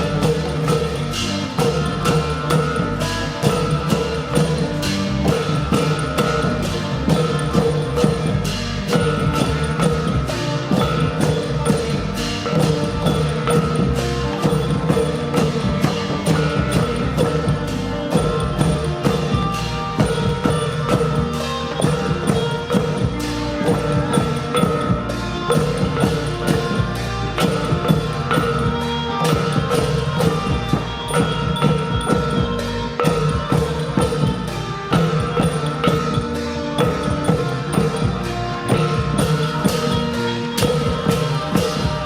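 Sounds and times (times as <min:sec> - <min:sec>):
steady drum beat: 0:00.0 - 0:42.0
wooden xylophone notes: 0:00.0 - 0:42.0.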